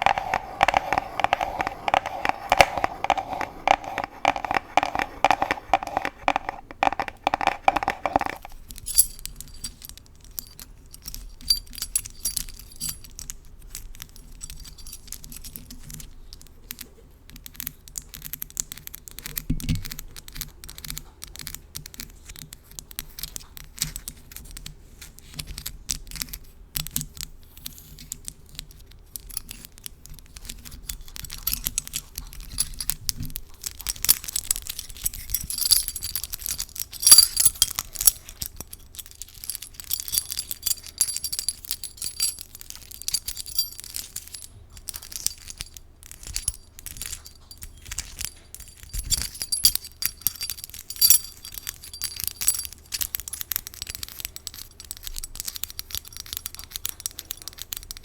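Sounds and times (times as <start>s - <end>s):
fingernails tapping metal key: 0.0s - 8.5s, 35.3s - 42.4s
metallic jingling: 0.0s - 9.2s, 34.0s - 44.5s, 46.4s - 52.8s.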